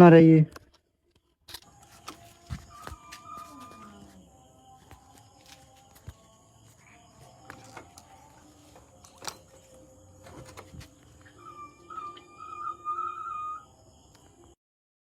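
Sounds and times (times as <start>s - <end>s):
wavering high whistle-like tone: 2.0s - 4.2s, 11.0s - 13.8s.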